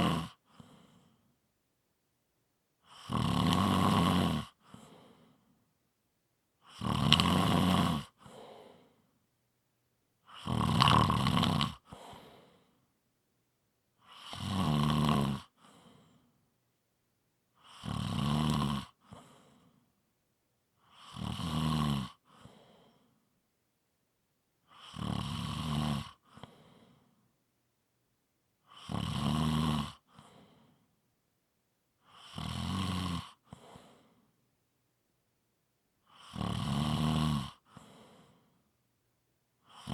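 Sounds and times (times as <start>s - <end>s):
person snoring: 0.0s - 0.7s, 2.9s - 5.2s, 6.6s - 8.8s, 10.3s - 12.6s, 14.0s - 15.6s, 17.6s - 19.3s, 20.9s - 22.5s, 24.7s - 26.7s, 28.7s - 30.4s, 32.1s - 34.0s, 36.1s - 38.2s, 39.7s - 39.9s.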